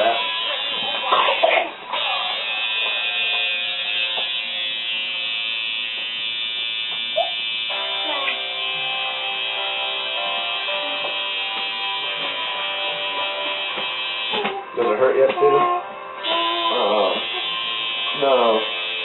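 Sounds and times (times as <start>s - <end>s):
electric tattoo machine buzzing: 0.0s - 14.8s, 16.2s - 19.0s
background music: 7.7s - 19.0s.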